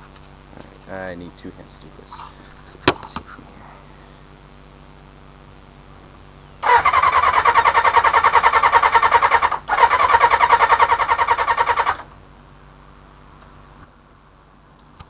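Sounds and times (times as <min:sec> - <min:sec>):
electric starter cranking engine: 0:06.6 - 0:12.2.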